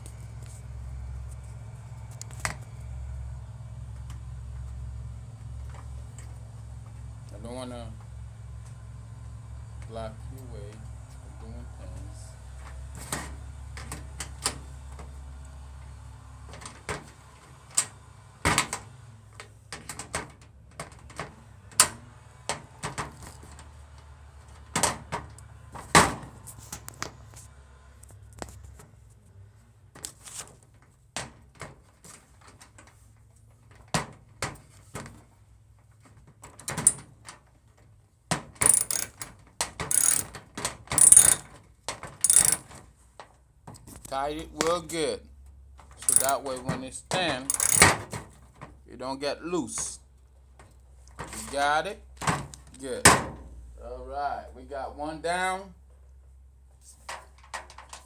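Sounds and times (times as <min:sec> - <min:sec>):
metal tools clicking and knocking: 0:38.6 - 0:41.6, 0:42.2 - 0:42.8, 0:46.0 - 0:46.5, 0:47.2 - 0:48.0
rasping strokes: 0:38.7 - 0:39.2, 0:39.9 - 0:40.3, 0:41.0 - 0:41.4, 0:42.3 - 0:42.6, 0:46.0 - 0:46.4.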